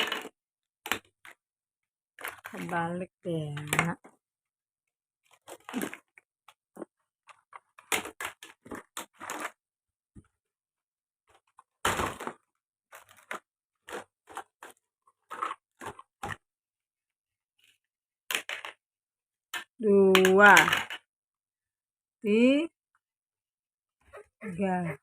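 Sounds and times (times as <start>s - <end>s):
plastic toys clicking and clacking: 0.0s - 1.4s, 2.2s - 4.2s, 18.3s - 18.8s, 19.5s - 21.1s.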